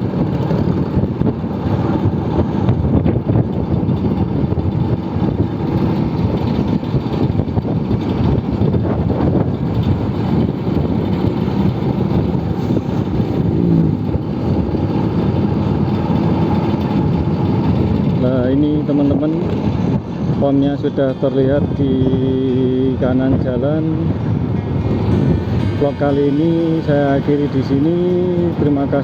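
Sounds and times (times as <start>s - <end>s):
scooter engine running: 0.0s - 20.4s
wind rush on microphone: 0.0s - 29.0s.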